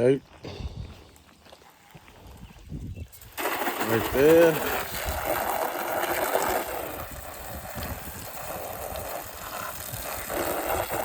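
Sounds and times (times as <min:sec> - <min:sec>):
sprayer hissing: 0:03.2 - 0:11.0.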